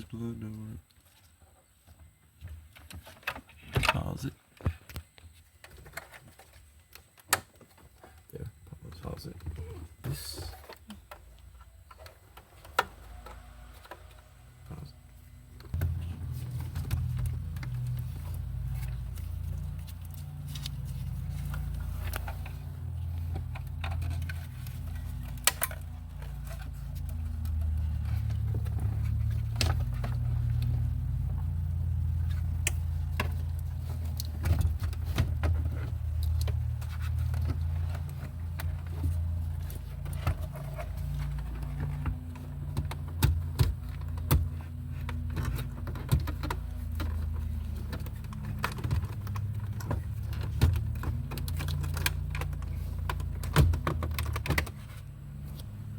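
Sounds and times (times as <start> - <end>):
plastic clicks and knocks: 32.3 - 54.8.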